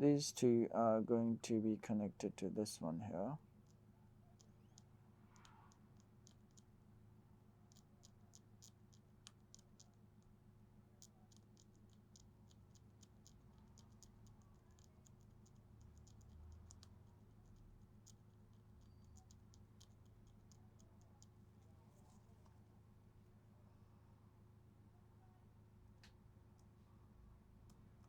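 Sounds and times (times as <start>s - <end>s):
faint electrical hum: 0.0s - 28.0s
faint sharp clicks: 4.4s - 6.7s.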